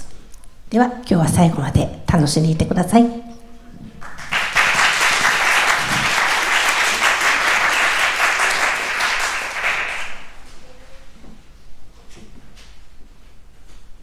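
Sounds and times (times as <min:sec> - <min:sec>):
audience applauding: 0:04.0 - 0:10.5.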